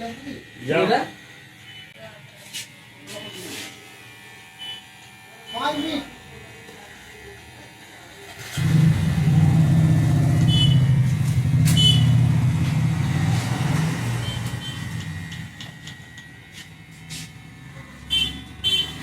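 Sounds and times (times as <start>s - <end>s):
vehicle engine rumbling: 8.6s - 16.3s.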